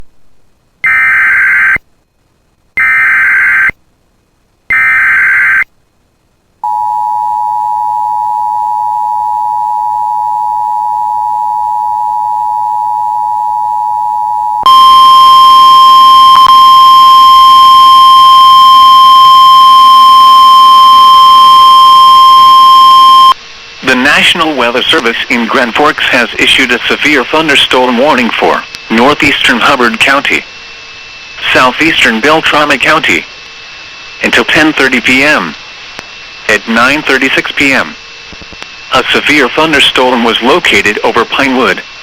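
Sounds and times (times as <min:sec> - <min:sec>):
digital data buzzing bursts: 0:00.8 - 0:01.8, 0:02.8 - 0:03.8, 0:04.7 - 0:05.7
steady alert tone: 0:00.8 - 0:01.8, 0:02.8 - 0:03.7, 0:04.7 - 0:05.6
two-tone attention signal: 0:00.8 - 0:01.8, 0:02.8 - 0:03.7, 0:04.7 - 0:05.6, 0:06.6 - 0:23.4.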